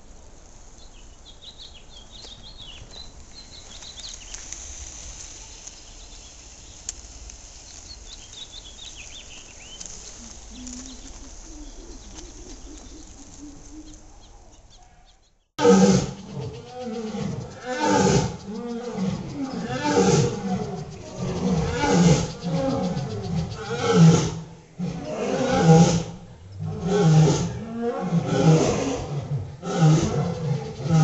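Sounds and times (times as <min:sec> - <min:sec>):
high insect hiss: 0:00.0 - 0:14.4, 0:15.6 - 0:31.0
small birds chirping: 0:00.4 - 0:24.8.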